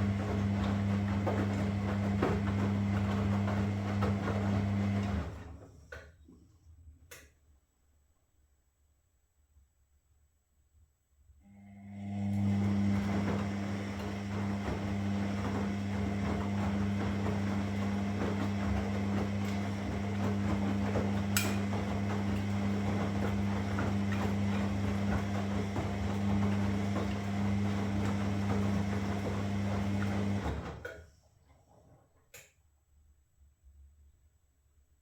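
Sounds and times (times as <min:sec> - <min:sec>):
washing machine running: 0:00.0 - 0:05.9, 0:11.5 - 0:31.0.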